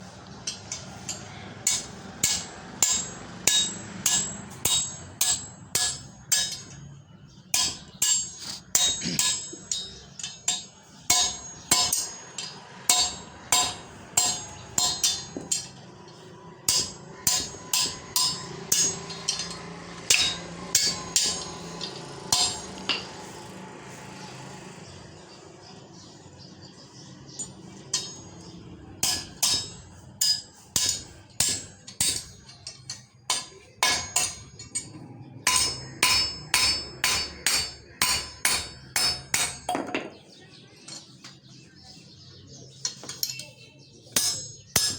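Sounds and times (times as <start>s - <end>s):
hammer striking steel rod: 0.5s - 6.8s, 7.6s - 15.8s, 16.6s - 23.2s, 27.4s - 40.0s, 44.1s - 44.9s.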